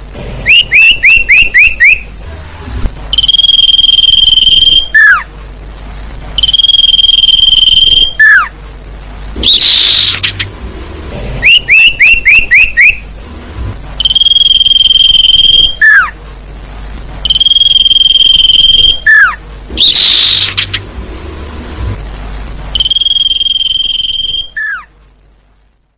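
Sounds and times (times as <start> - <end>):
whistled bird call: 0.5 - 2.1, 3.2 - 5.3, 6.4 - 8.5, 9.4 - 10.4, 11.4 - 13.1, 14.0 - 16.2, 17.3 - 20.8, 22.7 - 24.9
harsh bird call burst: 3.2 - 5.3, 6.4 - 8.5, 9.4 - 10.5, 11.4 - 13.2, 14.0 - 16.2, 17.3 - 20.8, 22.8 - 24.9.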